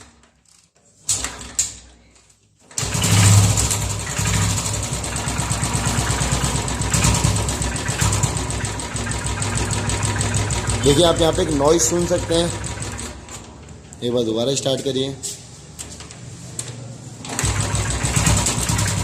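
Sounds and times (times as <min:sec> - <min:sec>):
motorcycle engine starting: 0:02.8 - 0:13.5, 0:17.2 - 0:19.0.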